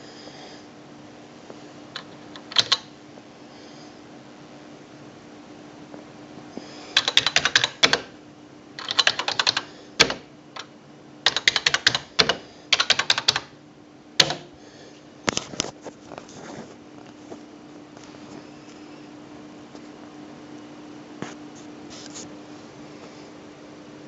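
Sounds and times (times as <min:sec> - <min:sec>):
electronic typewriter clattering: 0:02.0 - 0:02.9, 0:07.0 - 0:08.2, 0:08.8 - 0:13.6, 0:14.2 - 0:14.6.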